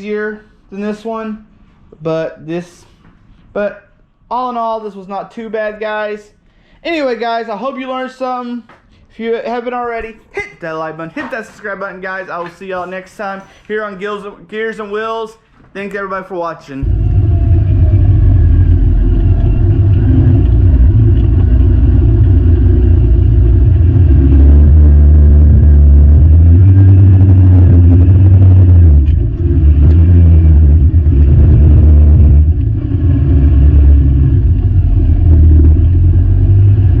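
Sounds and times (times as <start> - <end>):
vehicle engine running: 16.8 - 37.0.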